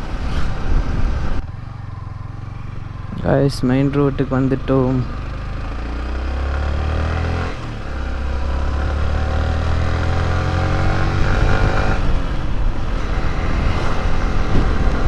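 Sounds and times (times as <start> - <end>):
wind rumble on microphone: 0.0 - 1.5, 10.8 - 15.0
motorcycle engine accelerating: 0.3 - 15.0.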